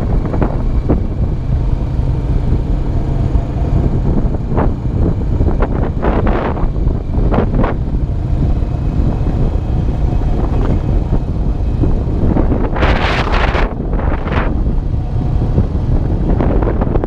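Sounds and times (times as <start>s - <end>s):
atv engine rumbling: 0.0s - 17.0s
wind buffeting microphone: 0.0s - 17.0s.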